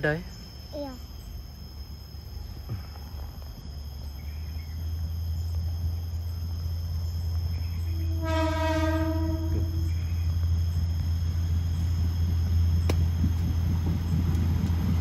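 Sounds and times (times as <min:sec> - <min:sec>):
diesel locomotive engine hum: 0:00.0 - 0:15.0
insects buzzing faintly: 0:00.0 - 0:15.0
locomotive horn chord: 0:07.9 - 0:10.2.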